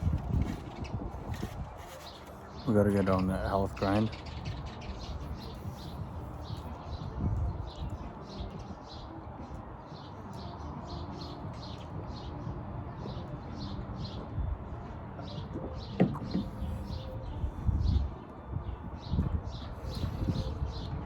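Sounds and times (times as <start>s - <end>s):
bird chirping: 0.1s - 9.2s.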